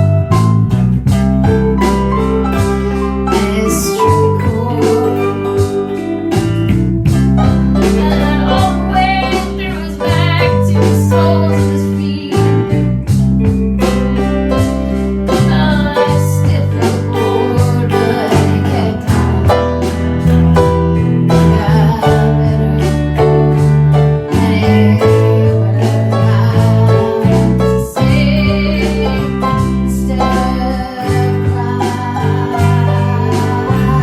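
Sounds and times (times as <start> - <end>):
drum beat: 0.0 - 22.4
bass line: 0.0 - 34.0
song with singing and guitar: 0.0 - 34.0.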